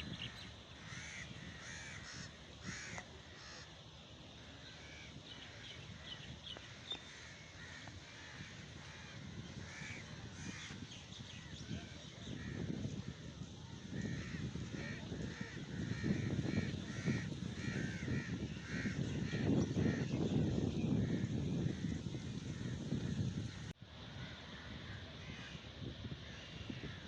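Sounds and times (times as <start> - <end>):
birds harsh calls: 0.0 - 25.6.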